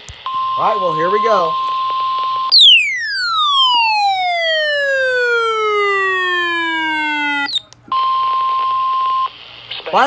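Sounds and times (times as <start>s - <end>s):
siren-like wail sliding down: 2.6s - 7.6s.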